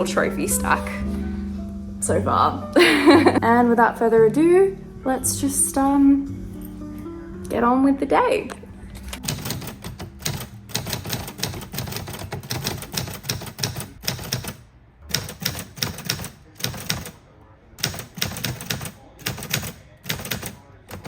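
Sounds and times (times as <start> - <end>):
typewriter key strikes: 9.1 - 17.2, 17.8 - 21.0.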